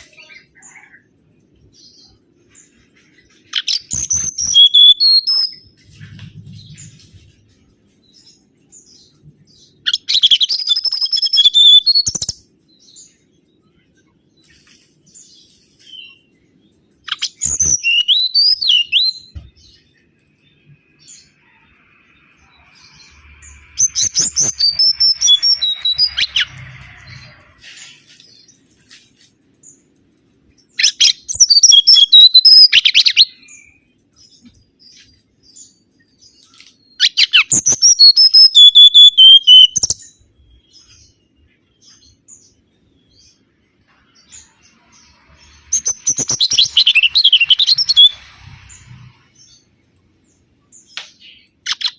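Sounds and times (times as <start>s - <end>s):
bird singing high whistled notes: 3.6s - 5.6s, 9.8s - 12.3s, 17.1s - 19.3s, 22.5s - 27.3s, 30.8s - 33.8s, 36.9s - 40.1s, 45.8s - 48.9s.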